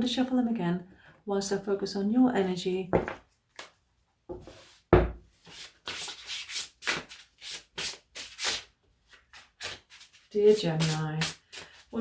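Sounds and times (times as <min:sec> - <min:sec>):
knock: 0:04.9 - 0:05.2
cards being shuffled: 0:05.6 - 0:11.9.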